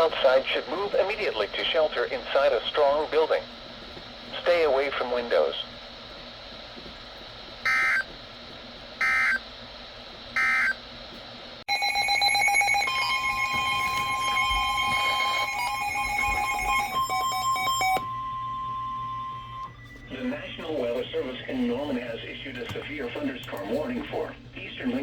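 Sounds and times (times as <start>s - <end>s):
alert data tone bursts: 7.6s - 8.1s, 9.0s - 9.4s, 10.4s - 10.8s, 11.7s - 19.7s
overlapping electronic alert tones: 7.7s - 8.0s, 9.0s - 9.4s, 10.4s - 10.8s
steady high tone: 11.7s - 19.9s.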